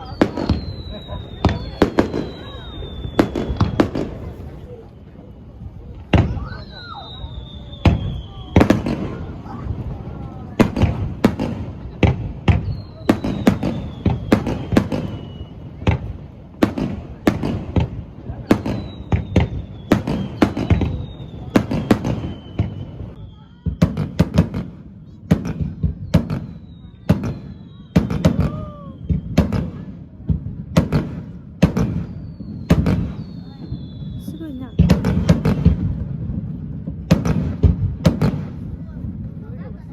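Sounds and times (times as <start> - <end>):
firework whistle falling in pitch: 0.0 - 9.3, 12.6 - 15.7, 18.6 - 23.8, 25.7 - 29.7, 31.9 - 35.7
fireworks bangs: 0.0 - 39.9.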